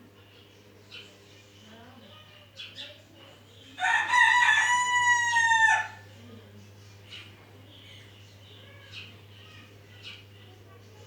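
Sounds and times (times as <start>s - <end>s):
rooster crowing: 3.8s - 6.0s.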